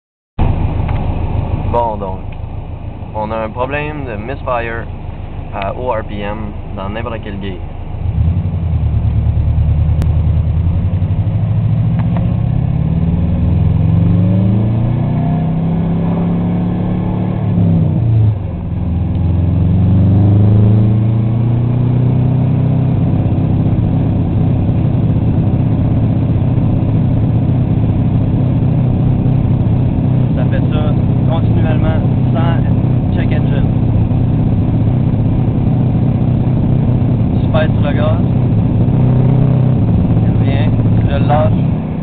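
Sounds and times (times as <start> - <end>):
turbocharged engine revving roughly: 8.0 - 42.0.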